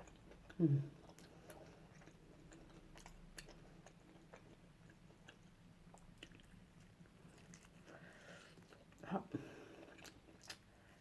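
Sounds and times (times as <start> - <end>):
teeth and mouth clicks: 0.0 - 7.9, 9.8 - 10.7
faint chewing: 0.0 - 11.0.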